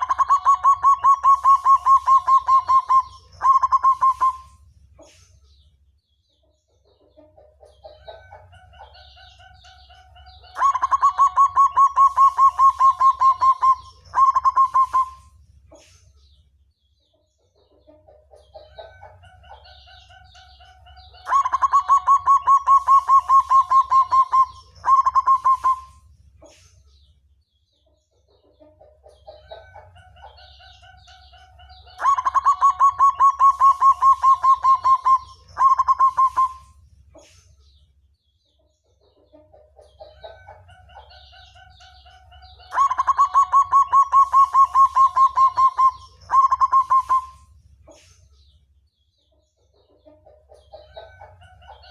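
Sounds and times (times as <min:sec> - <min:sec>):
dove cooing trill: 0:00.0 - 0:04.6, 0:10.5 - 0:15.3, 0:18.6 - 0:26.0, 0:31.0 - 0:36.8, 0:42.6 - 0:47.5.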